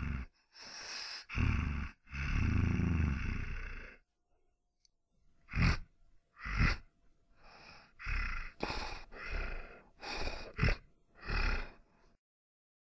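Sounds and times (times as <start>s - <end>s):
person making zombie gasps: 5.5s - 6.8s, 7.4s - 11.8s.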